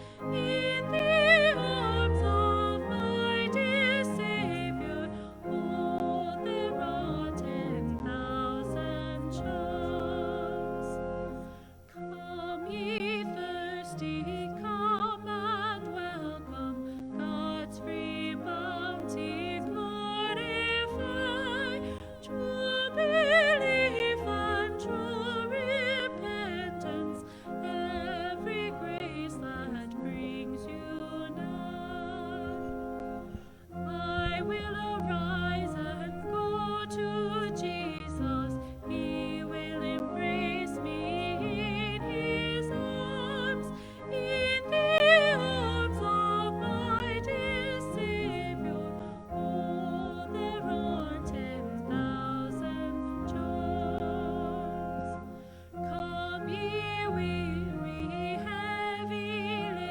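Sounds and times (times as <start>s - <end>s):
singer breathing: 0.0s - 0.4s, 11.4s - 11.9s, 27.2s - 27.6s, 33.2s - 33.7s, 43.7s - 44.0s, 55.2s - 55.8s
instrumental accompaniment: 0.0s - 59.9s
person singing hymn with vibrato: 0.0s - 59.9s.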